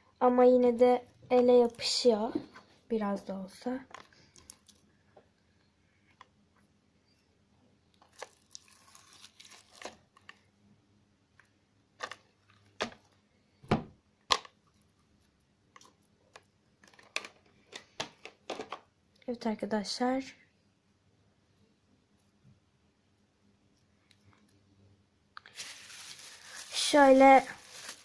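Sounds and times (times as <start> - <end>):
slime popping and crackling: 8.0 - 10.0.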